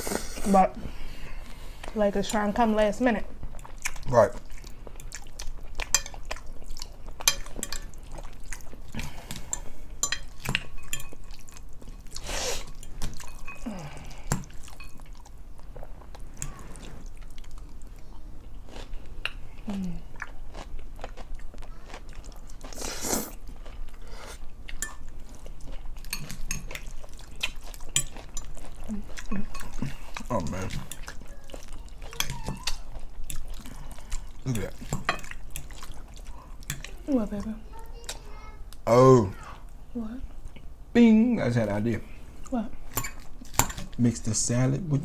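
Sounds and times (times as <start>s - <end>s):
wet chewing and mouth clicks: 3.4s - 38.8s.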